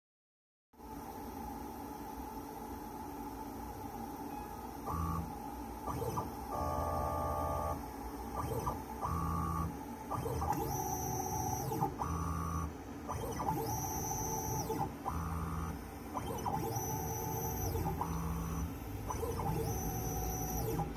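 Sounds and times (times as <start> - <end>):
stepper motors whining: 10.2 - 20.9.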